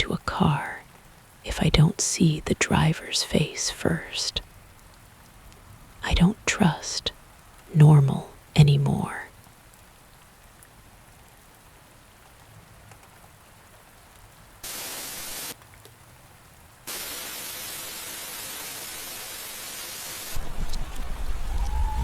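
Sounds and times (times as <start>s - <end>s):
faint rain hiss: 0.0s - 22.0s
loud static hiss: 14.6s - 15.6s, 16.8s - 21.6s.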